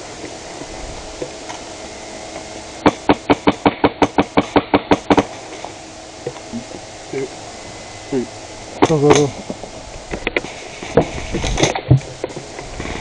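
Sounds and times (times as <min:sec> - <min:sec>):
airsoft gun rapid shots: 0:02.8 - 0:05.3.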